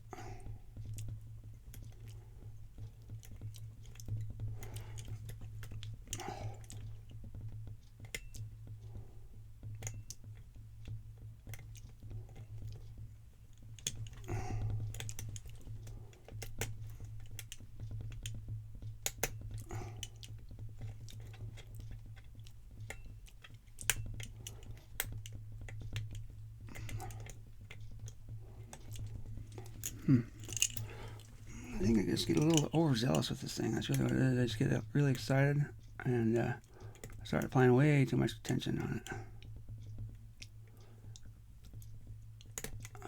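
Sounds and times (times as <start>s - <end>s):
lock pick clicks and scrapes: 26.8s - 31.4s.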